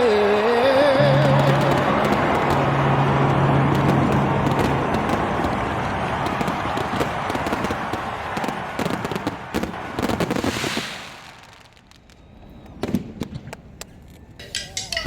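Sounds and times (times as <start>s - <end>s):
fireworks crackling bangs: 1.0s - 13.8s
fireworks pops: 3.7s - 14.0s.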